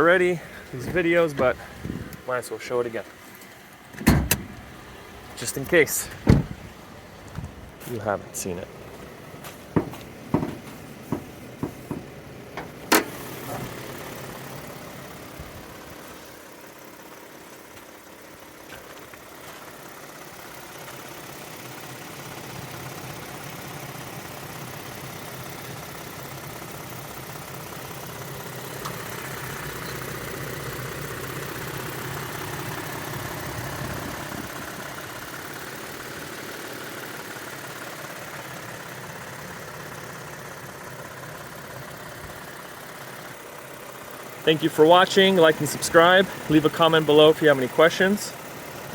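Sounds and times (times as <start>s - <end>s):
truck engine idling: 0.0s - 48.9s
sharp clicks and knocks: 9.7s - 13.1s.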